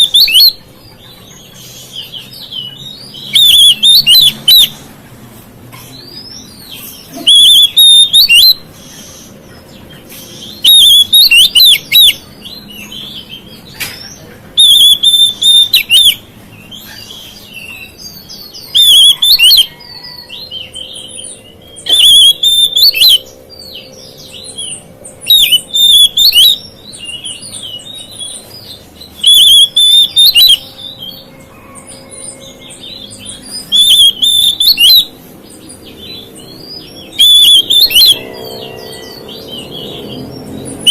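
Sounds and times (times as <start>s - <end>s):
bird singing whistled phrases: 0.0s - 0.6s, 1.9s - 4.7s, 6.2s - 8.6s, 10.4s - 13.3s, 14.6s - 16.2s, 17.5s - 31.1s, 32.3s - 35.1s, 35.9s - 40.1s
bird chirps and twitters: 0.0s - 40.9s.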